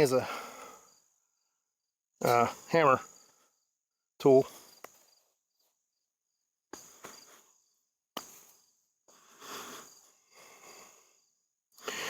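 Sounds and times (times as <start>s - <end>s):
crickets chirring: 0.0s - 12.0s.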